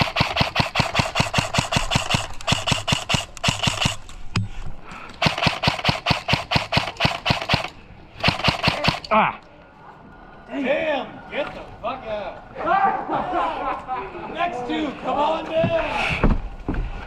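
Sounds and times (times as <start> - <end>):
airsoft guns firing full auto: 0.0 - 4.0, 5.2 - 9.1
sharp crack: 0.0 - 4.2.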